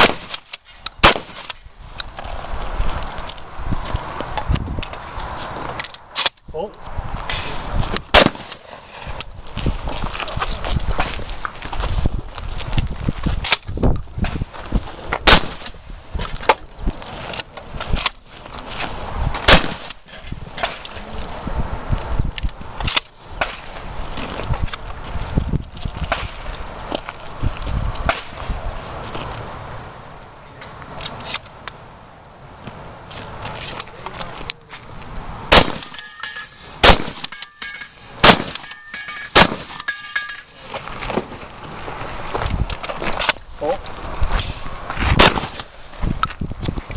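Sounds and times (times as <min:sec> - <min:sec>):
loud shotgun shots: 0:00.0 - 0:01.6, 0:08.1 - 0:08.6, 0:15.2 - 0:15.7, 0:19.4 - 0:20.0, 0:35.5 - 0:40.0, 0:45.2 - 0:45.7
steel target ringing: 0:35.6 - 0:40.6.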